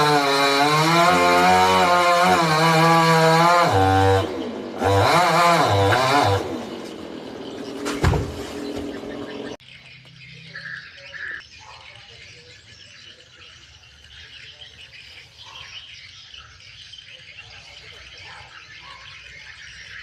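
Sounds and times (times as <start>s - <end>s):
chainsaw running: 0.0s - 9.6s
bird squawks: 10.4s - 12.1s.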